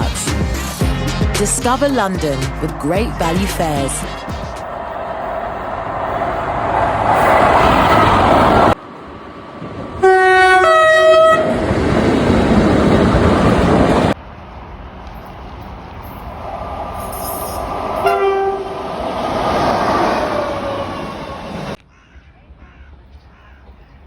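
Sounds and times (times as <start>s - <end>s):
train running noise: 0.0s - 21.8s
two-tone locomotive horn: 10.0s - 11.6s, 18.0s - 18.9s.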